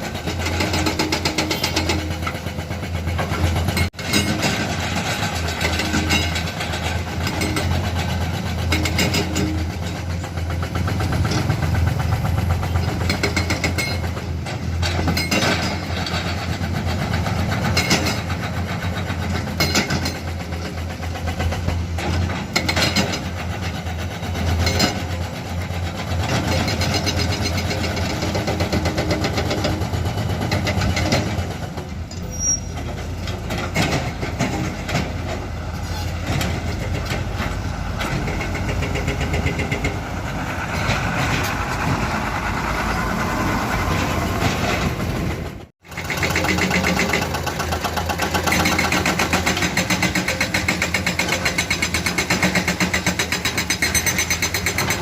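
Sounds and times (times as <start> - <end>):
knocks and clanks of digging: 0.0 - 42.3, 45.9 - 55.0
diesel excavators running: 0.0 - 55.0.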